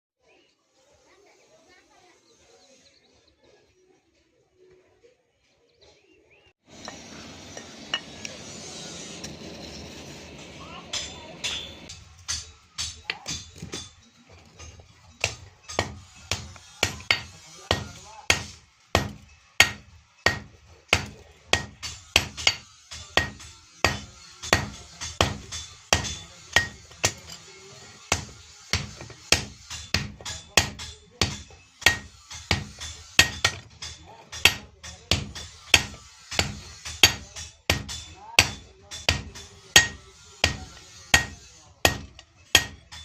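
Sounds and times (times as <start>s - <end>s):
hammer striking iron on anvil: 6.7s - 8.3s, 10.8s - 14.0s, 14.6s - 43.0s.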